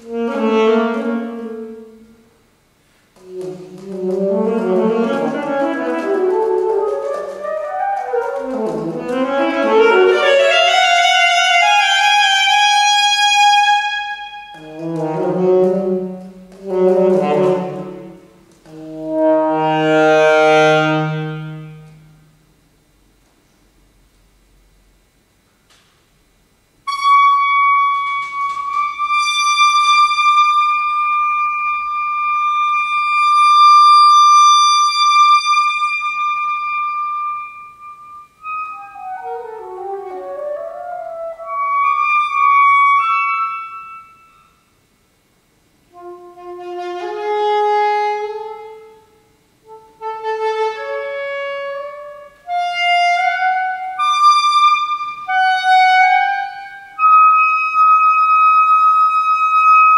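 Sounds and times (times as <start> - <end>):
solo saxophone playing: 0.0 - 2.4, 3.2 - 22.5, 26.8 - 44.8, 45.9 - 59.9.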